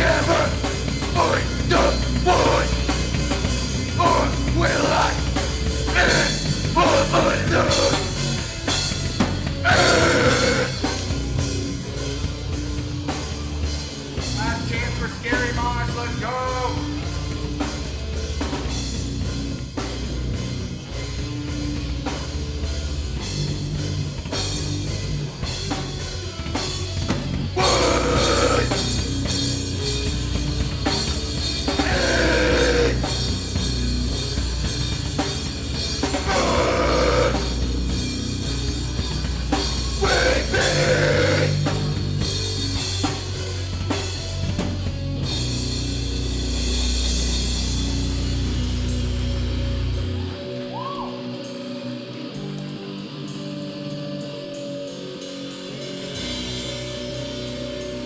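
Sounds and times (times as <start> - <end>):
person singing: 0.0 - 2.9, 4.0 - 5.3, 5.9 - 8.2, 9.6 - 10.9, 27.6 - 28.9, 31.8 - 33.2, 36.2 - 37.6, 40.0 - 41.8
live rock band playing: 0.0 - 58.0.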